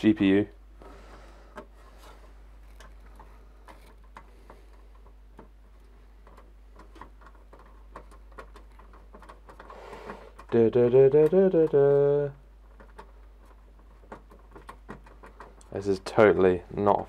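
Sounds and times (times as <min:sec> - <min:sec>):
hands clicking on computer hardware: 0:00.8 - 0:16.0
metal and plastic parts knocking: 0:00.8 - 0:16.2.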